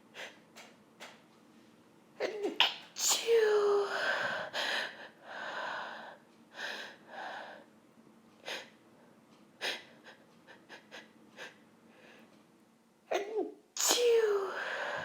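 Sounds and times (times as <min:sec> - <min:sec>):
woman sneezing: 0:02.2 - 0:04.0, 0:13.1 - 0:14.6
woman gasping: 0:03.3 - 0:07.6, 0:14.0 - 0:15.0.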